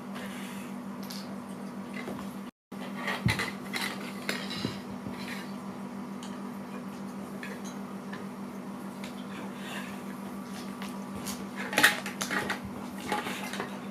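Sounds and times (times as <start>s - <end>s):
steady low hum: 0.0s - 13.9s.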